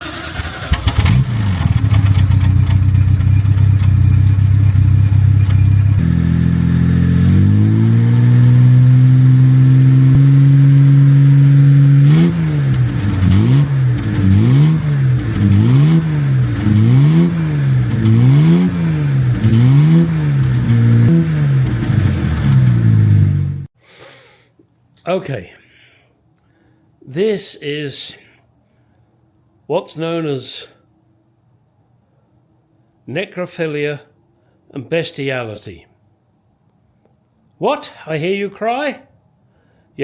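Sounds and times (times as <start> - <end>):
car engine idling and revving: 0.0 - 23.7.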